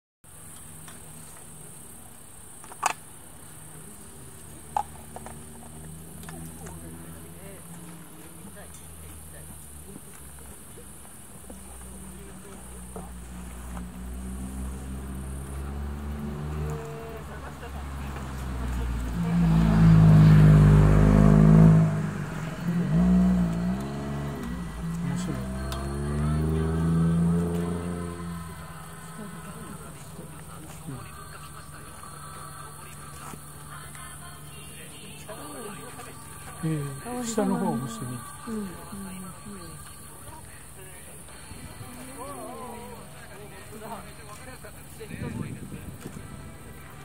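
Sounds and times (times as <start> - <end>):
insects chirring: 0.3 - 19.1
loud low note over loudspeakers: 18.8 - 30.0.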